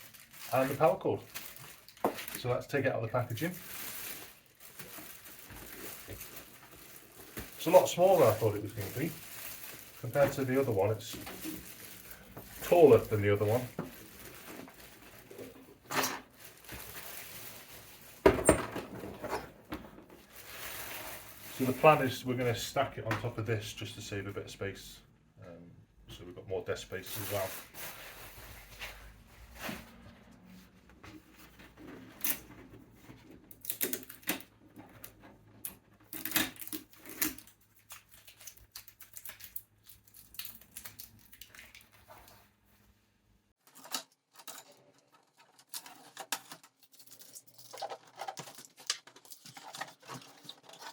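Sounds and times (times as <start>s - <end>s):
packaging rustle: 0.0s - 19.4s, 20.2s - 22.2s, 27.0s - 29.9s, 43.6s - 50.9s.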